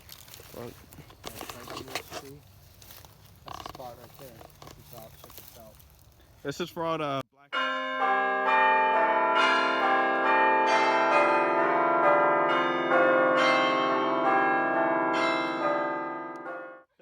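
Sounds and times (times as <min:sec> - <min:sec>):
ringing chime notes: 0:07.5 - 0:16.9.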